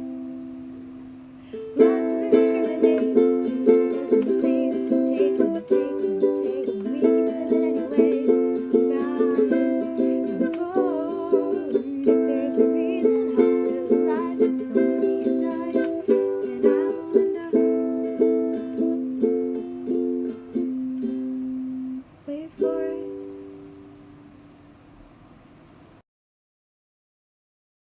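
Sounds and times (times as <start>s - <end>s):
strummed string instrument: 0.0s - 24.3s.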